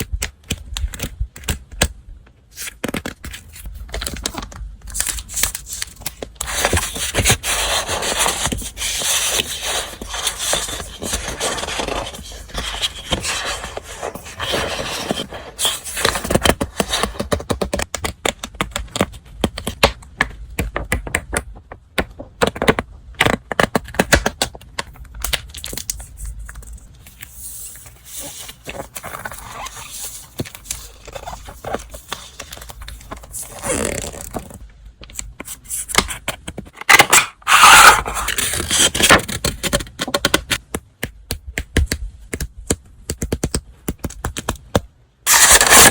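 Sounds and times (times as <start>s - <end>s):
paper rustling: 2.6s - 17.4s, 25.6s - 34.6s, 37.1s - 40.2s, 45.3s - 45.9s.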